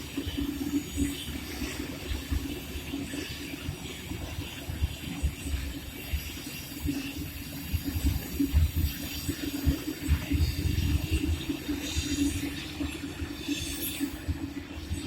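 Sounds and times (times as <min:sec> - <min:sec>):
train rail noise hiss: 0:00.0 - 0:15.0.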